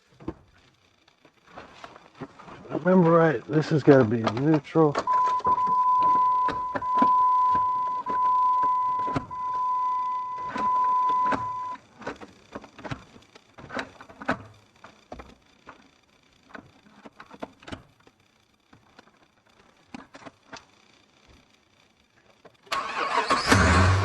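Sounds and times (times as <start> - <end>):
steady electronic beep tone: 5.1 - 11.8.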